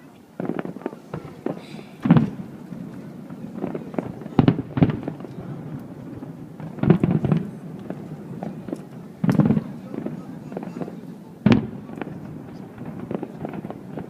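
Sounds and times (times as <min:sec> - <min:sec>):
fireworks bursting: 0:00.0 - 0:14.0.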